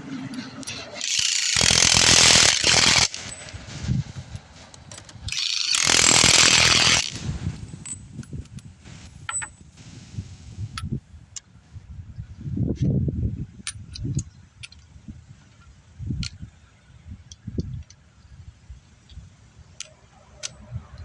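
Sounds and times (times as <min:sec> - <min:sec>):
impact wrench bursts: 0:01.0 - 0:03.4, 0:05.3 - 0:07.2.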